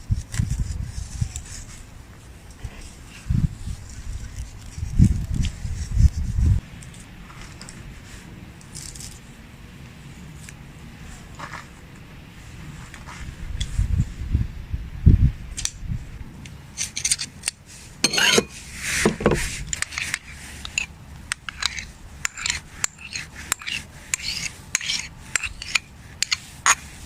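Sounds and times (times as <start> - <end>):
scraping strokes: 0.1 - 1.9, 2.5 - 9.3, 16.8 - 27.0.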